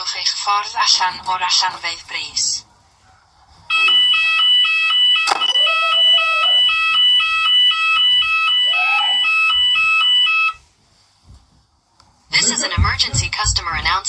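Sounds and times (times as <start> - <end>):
fire alarm two-tone warble: 3.7 - 10.6.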